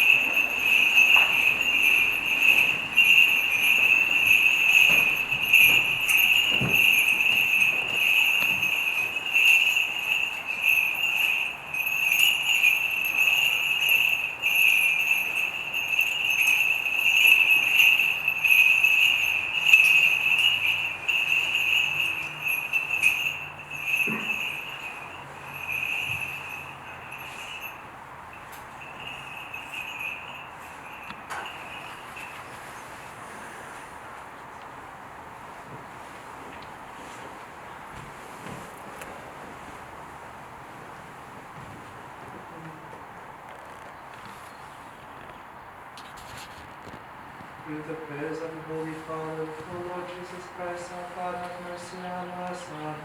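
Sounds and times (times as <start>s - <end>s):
censer bells jingling: 0.0s - 34.1s, 47.6s - 53.0s.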